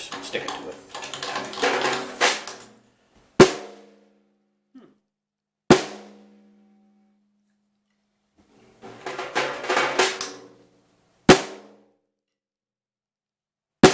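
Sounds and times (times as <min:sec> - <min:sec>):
snare drum strokes: 0:00.0 - 0:02.8, 0:08.8 - 0:10.5.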